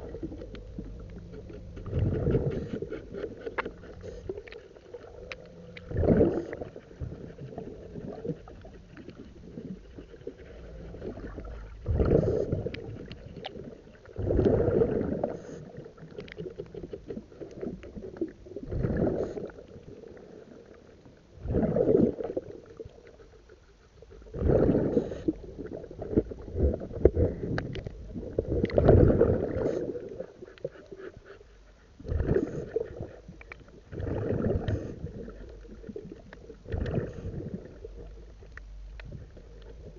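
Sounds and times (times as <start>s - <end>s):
underwater gurgling: 0.0s - 39.9s
diver exhaling bubbles underwater: 5.1s - 6.8s, 11.0s - 13.0s, 14.2s - 15.8s, 17.6s - 19.6s, 21.4s - 22.6s, 24.3s - 30.3s, 32.0s - 33.1s, 33.9s - 38.2s.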